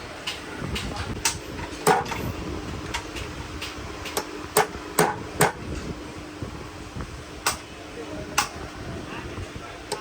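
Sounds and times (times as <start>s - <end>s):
steady low hum: 0.0s - 10.0s
tools knocking on metal parts: 0.2s - 2.2s, 2.9s - 5.6s.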